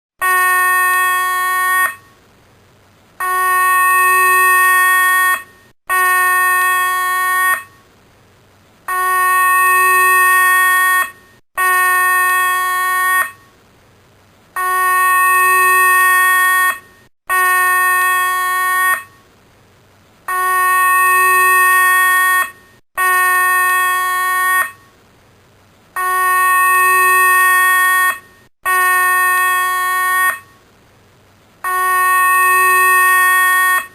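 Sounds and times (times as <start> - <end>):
buzzy alarm siren blasts: 20.3 - 24.8, 26.0 - 30.5, 31.6 - 33.9.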